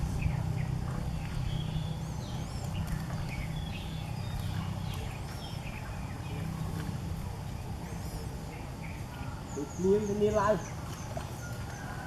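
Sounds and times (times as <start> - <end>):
steady low rumble: 0.0 - 7.9
small birds chirping: 7.6 - 11.9.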